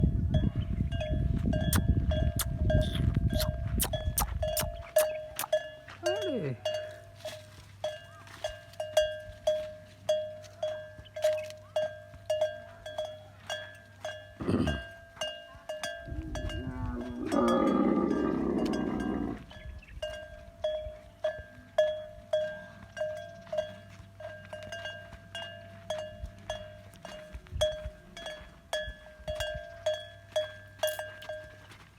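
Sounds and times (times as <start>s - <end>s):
camel bell clanking: 0.0s - 31.9s
camel rumbling call: 14.4s - 15.0s, 16.0s - 19.6s.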